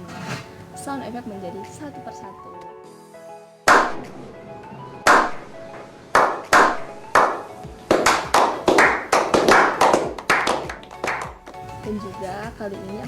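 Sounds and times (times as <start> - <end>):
background music: 0.0 - 13.0
sharp clap-like hits: 3.7 - 4.3, 5.1 - 5.4, 6.2 - 11.7.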